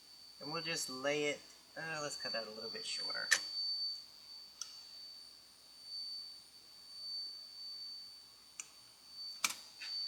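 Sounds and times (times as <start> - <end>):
faint high-pitched whine: 0.0 - 10.0
sharp click: 9.4 - 9.6.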